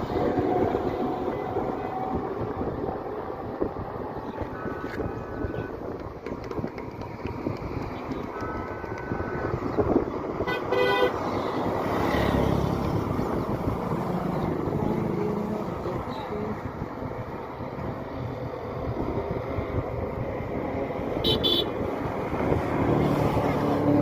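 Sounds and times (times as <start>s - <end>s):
road traffic: 0.0s - 24.0s
vehicle horn honking: 10.4s - 11.2s, 21.2s - 21.7s
vehicle passing close: 11.0s - 24.0s.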